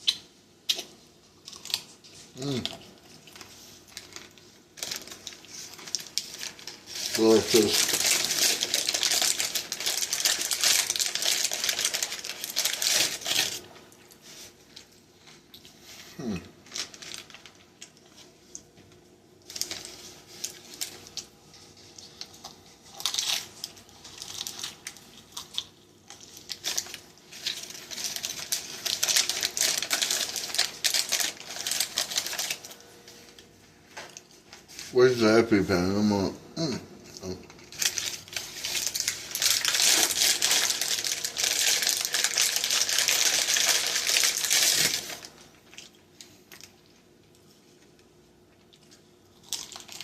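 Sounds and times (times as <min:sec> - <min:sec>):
crunchy food chewing: 0:00.0 - 0:15.8, 0:19.5 - 0:32.8, 0:48.5 - 0:50.0.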